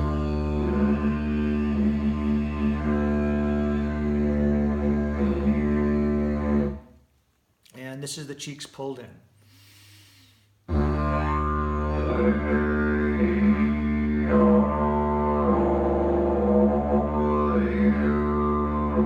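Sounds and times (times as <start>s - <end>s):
didgeridoo drone: 0.0s - 6.8s, 10.7s - 19.0s.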